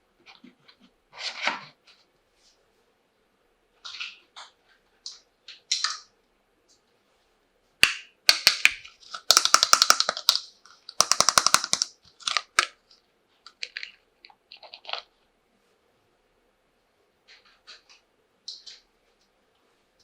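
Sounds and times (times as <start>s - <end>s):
plastic toy pieces clattering: 8.3s - 12.8s.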